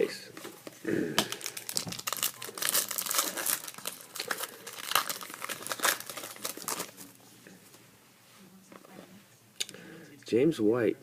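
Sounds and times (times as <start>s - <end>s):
foil wrapper crinkling: 1.2s - 7.1s.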